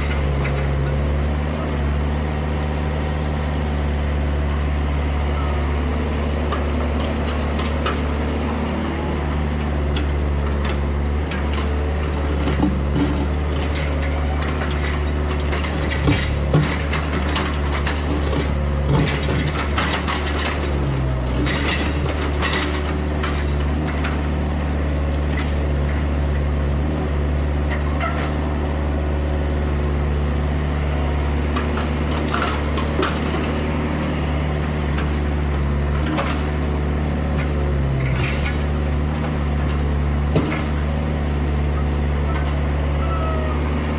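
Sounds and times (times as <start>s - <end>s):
excavator engine droning: 0.0s - 43.9s
digging knocks and clatters: 9.0s - 27.0s, 31.3s - 41.1s.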